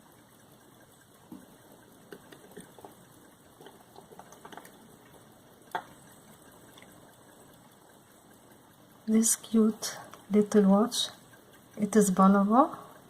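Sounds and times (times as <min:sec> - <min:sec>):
small handling clicks and taps: 0:00.3 - 0:08.6.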